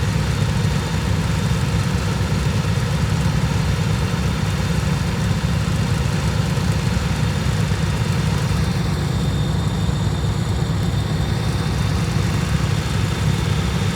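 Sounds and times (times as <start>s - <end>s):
lawn tractor engine running: 10.3s - 13.9s.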